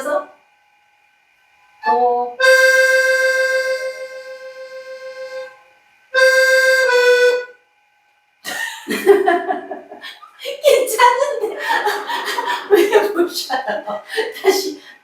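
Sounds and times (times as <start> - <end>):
accordion melody: 1.5 - 7.9.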